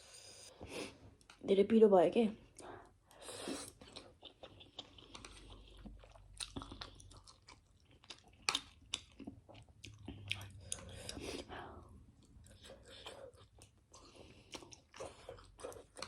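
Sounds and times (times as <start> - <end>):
person chewing food: 2.5 - 16.0.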